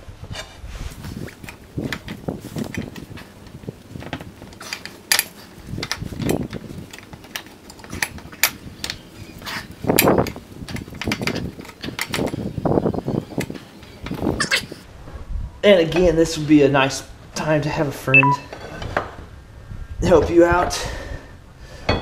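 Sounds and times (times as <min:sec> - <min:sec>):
metal parts clinking: 0:01.3 - 0:14.7.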